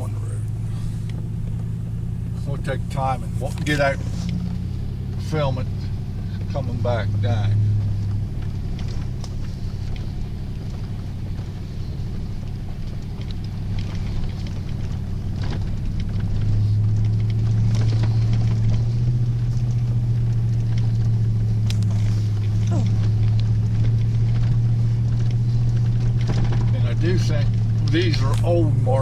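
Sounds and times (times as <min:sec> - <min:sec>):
vehicle engine and road drone: 0:00.0 - 0:29.0
knocks and rattles: 0:12.8 - 0:28.6.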